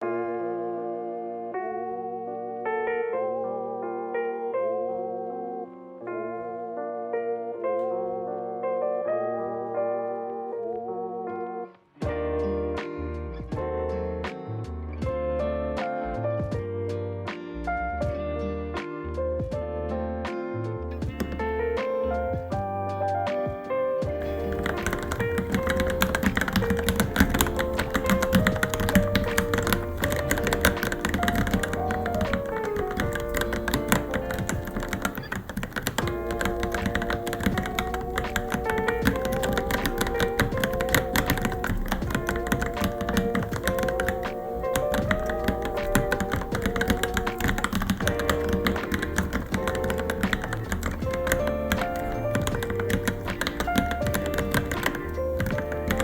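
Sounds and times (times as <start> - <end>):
background music: 0.0 - 56.0
fast typing on mechanical keyboard: 21.0 - 22.4, 24.1 - 56.0.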